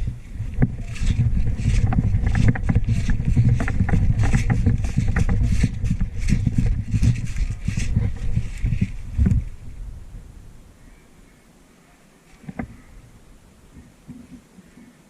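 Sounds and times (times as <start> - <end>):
sharp clicks and rustles: 0.0 - 9.8, 12.2 - 12.9
heavy low rumble: 0.0 - 10.9.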